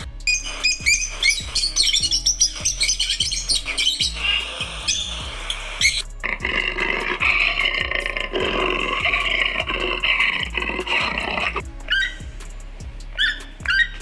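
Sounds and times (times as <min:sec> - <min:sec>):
background music with steady beat: 0:00.0 - 0:14.0
bird chirps: 0:00.3 - 0:06.1, 0:08.4 - 0:12.3
big cat roaring: 0:06.2 - 0:11.6.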